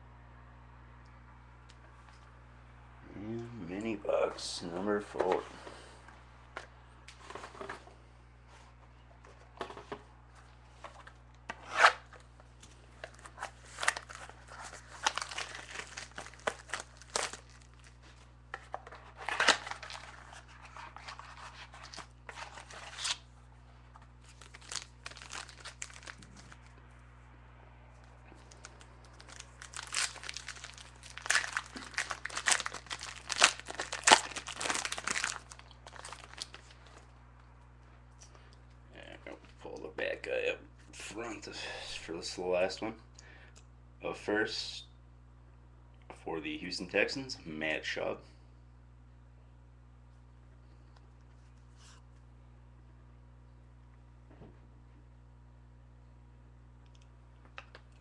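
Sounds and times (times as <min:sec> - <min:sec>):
low electrical hum: 0:00.0 - 0:58.0
plastic wrapping tearing and crinkling: 0:13.0 - 0:23.3, 0:24.2 - 0:26.7, 0:28.4 - 0:37.0.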